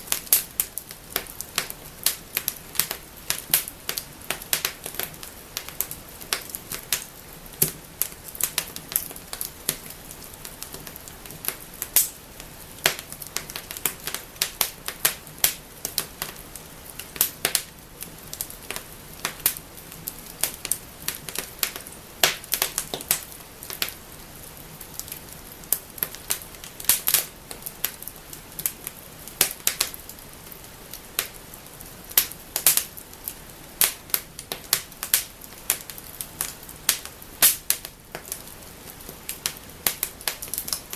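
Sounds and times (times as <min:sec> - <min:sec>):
fire hissing: 0:00.0 - 0:40.9
wood fire crackling: 0:00.0 - 0:40.9.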